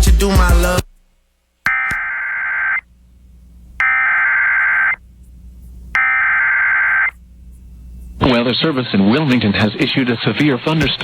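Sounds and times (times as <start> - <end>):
buzzing digital data tones: 1.7 - 2.8, 3.8 - 5.0, 6.0 - 7.2.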